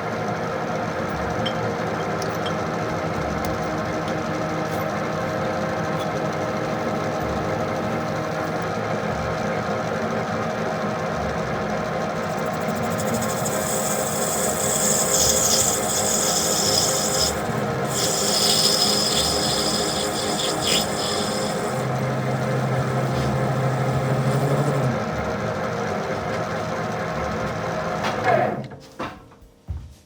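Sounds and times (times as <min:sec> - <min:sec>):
machine running hum: 0:00.0 - 0:28.7
steel being cut: 0:12.2 - 0:25.1.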